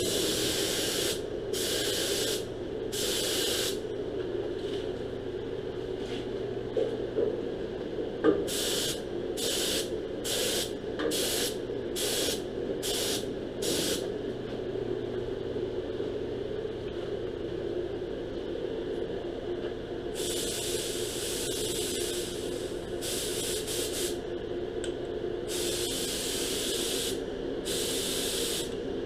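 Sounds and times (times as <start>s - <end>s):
spray gun hissing: 0.0s - 2.4s, 3.0s - 3.8s, 8.5s - 14.0s, 20.2s - 24.2s, 25.5s - 28.7s
steady hum: 0.0s - 29.0s.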